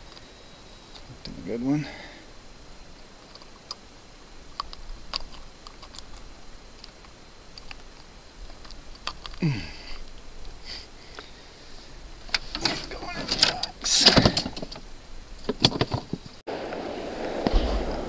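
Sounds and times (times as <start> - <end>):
fishing tackle clicks and knocks: 4.6 - 9.4.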